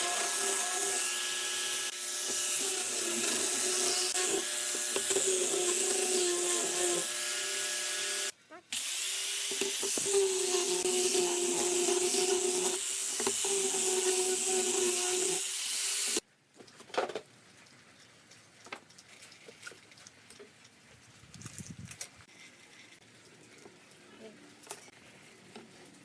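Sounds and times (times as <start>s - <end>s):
power tool whining and hissing: 0.0s - 16.2s.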